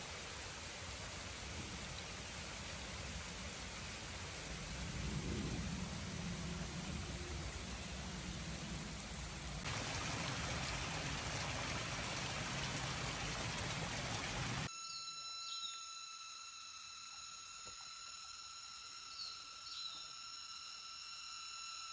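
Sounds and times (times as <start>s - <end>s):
water rushing: 0.0s - 5.0s, 6.0s - 14.7s
steady high whine: 14.7s - 21.9s
bird chirp: 14.8s - 16.0s, 19.0s - 20.3s.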